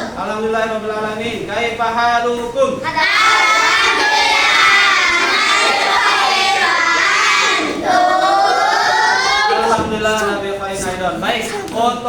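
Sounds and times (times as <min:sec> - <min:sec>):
children chanting in unison: 0:02.8 - 0:09.9.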